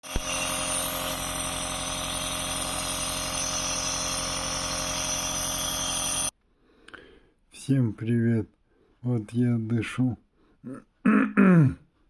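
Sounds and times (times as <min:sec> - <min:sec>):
nebulizer compressor humming: 0:00.0 - 0:06.3.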